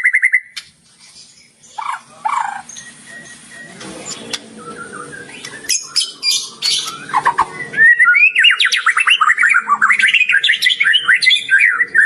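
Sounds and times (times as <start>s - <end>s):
bird whistling: 0.0s - 0.6s, 1.3s - 12.0s.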